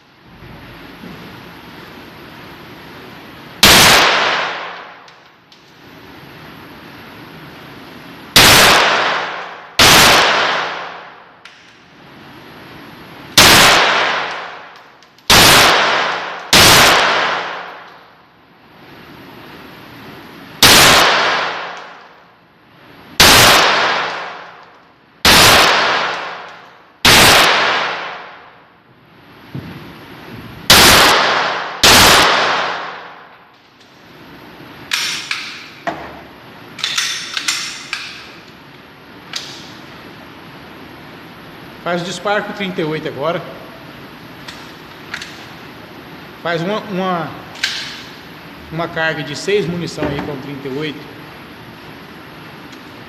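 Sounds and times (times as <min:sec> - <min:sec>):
handgun shots echoing: 0:13.4 - 0:18.0.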